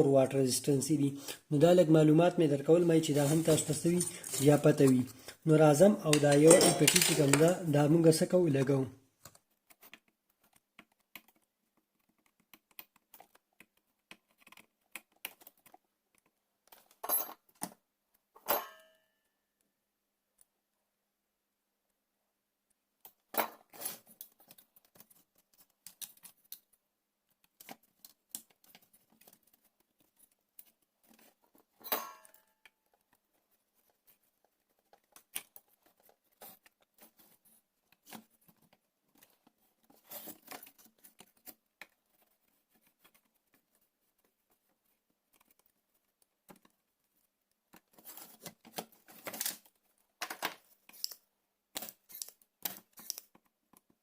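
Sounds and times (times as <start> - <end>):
tool clicks scrapes and taps: 51.8 - 53.9.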